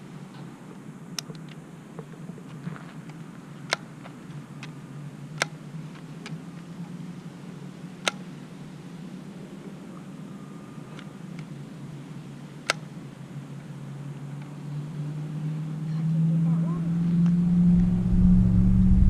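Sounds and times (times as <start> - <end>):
low hum: 0.0 - 19.0
bb gun clicks: 12.7 - 12.9.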